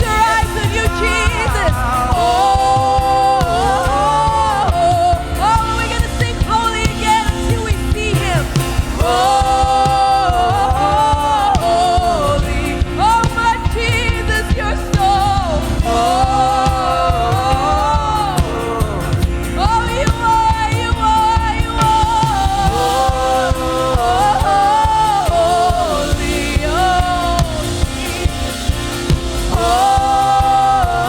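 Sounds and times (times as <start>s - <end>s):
band accompaniment: 0.0s - 31.0s
person singing with vibrato: 0.0s - 31.0s.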